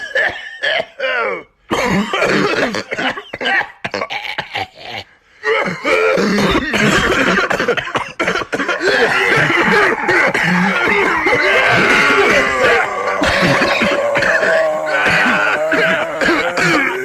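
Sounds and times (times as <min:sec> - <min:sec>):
person coughing: 0:00.0 - 0:17.0
loud continuous vocal sounds: 0:08.8 - 0:17.0.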